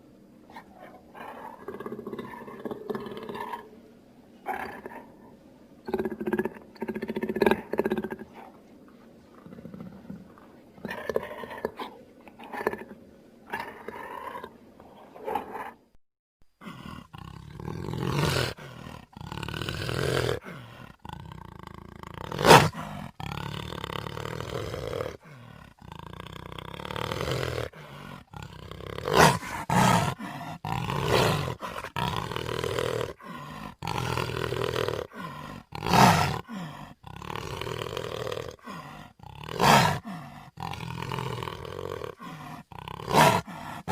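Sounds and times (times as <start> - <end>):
loud creature roars: 16.6 - 43.9
short growls and grunts: 16.6 - 43.9.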